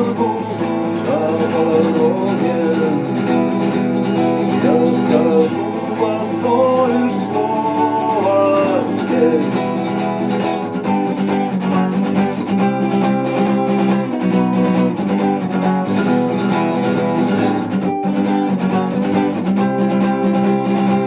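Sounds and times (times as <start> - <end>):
acoustic guitar strumming chords: 0.0 - 21.0.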